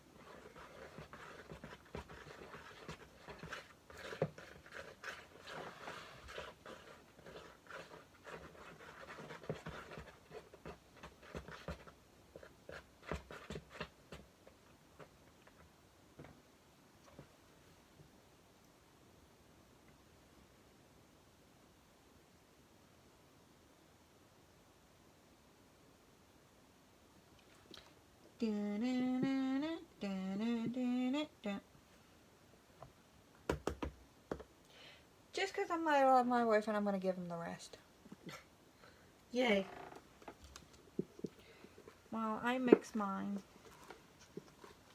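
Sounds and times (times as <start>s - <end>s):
hands scratching and scraping slime: 0.2s - 11.8s
person humming a tune: 28.4s - 31.6s.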